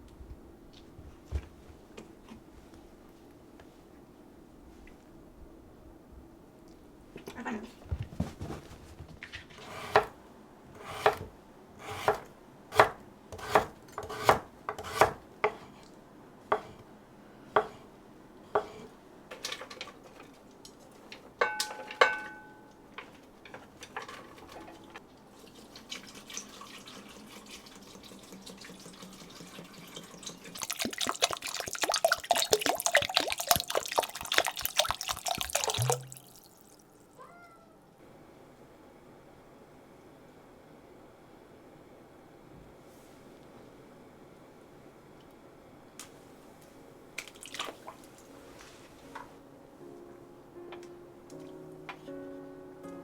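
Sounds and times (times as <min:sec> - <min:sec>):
dishware clinking: 0:21.4 - 0:22.7
tap running into sink: 0:29.3 - 0:36.4.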